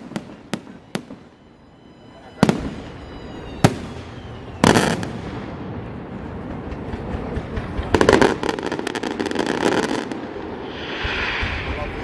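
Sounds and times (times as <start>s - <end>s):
firework crackles: 0.0s - 1.4s, 2.4s - 12.0s
fireworks rumble: 2.0s - 12.0s
firework bang: 7.9s - 12.0s.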